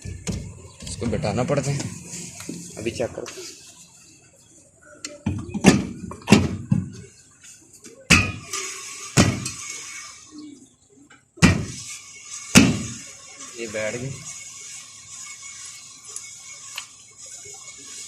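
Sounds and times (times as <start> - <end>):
sharp metal knocks: 5.2 - 6.9, 8.1 - 8.5, 9.2 - 9.6, 11.4 - 11.8, 12.5 - 13.0.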